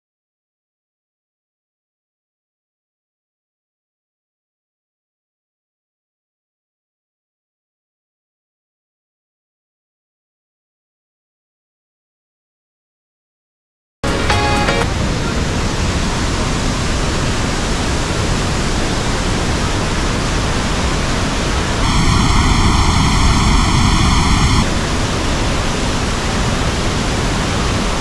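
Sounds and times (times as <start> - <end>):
waterfall roaring: 14.7 - 28.0.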